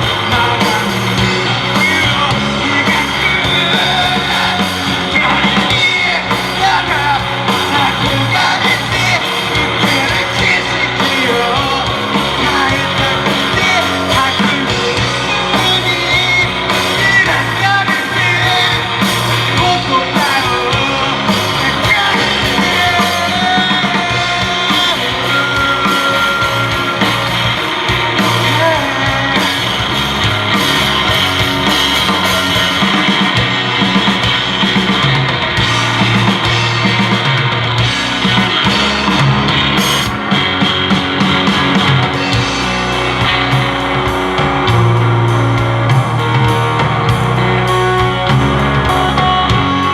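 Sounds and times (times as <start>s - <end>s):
person singing: 0.0s - 34.0s
rock band playing live: 0.0s - 49.9s.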